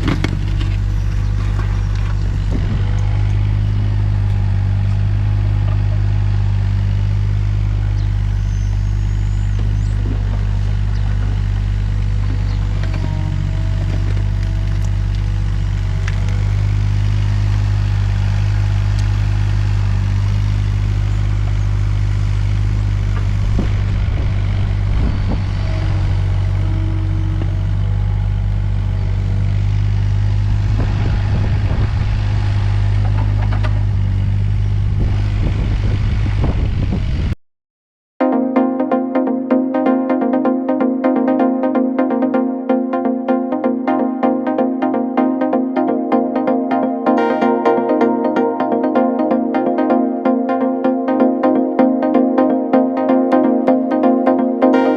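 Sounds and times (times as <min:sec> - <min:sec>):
clatter and scrapes: 0:00.0 - 0:02.3
excavator diesel engine running: 0:00.0 - 0:37.2, 0:39.8 - 0:54.9.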